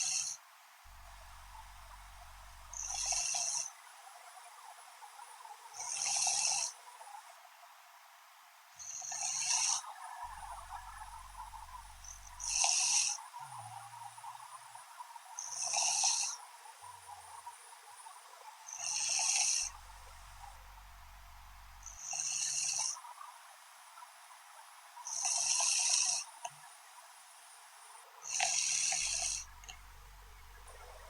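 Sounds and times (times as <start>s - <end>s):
woman snoring: 0.0s - 3.7s, 5.8s - 6.7s, 8.8s - 13.2s, 15.4s - 16.4s, 18.7s - 23.0s, 25.1s - 26.3s, 28.3s - 31.0s.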